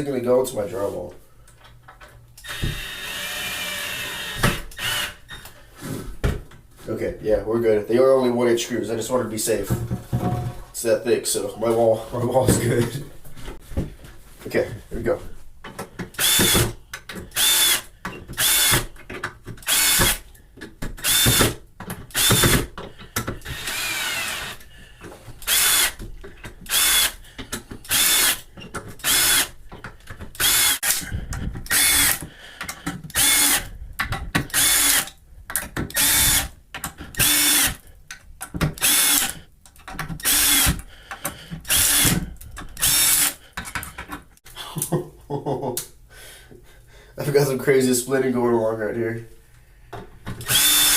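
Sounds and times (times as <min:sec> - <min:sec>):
screwdriver motor whine: 0:02.4 - 0:05.3, 0:19.7 - 0:20.2, 0:23.5 - 0:24.6, 0:25.5 - 0:26.0, 0:26.7 - 0:27.2, 0:27.9 - 0:28.4, 0:30.4 - 0:31.0, 0:31.7 - 0:32.2, 0:33.1 - 0:33.7, 0:34.5 - 0:35.1, 0:35.9 - 0:36.5, 0:37.2 - 0:37.8, 0:38.8 - 0:39.4, 0:40.2 - 0:40.8, 0:41.7 - 0:42.2, 0:42.8 - 0:43.4, 0:50.4 - 0:50.9.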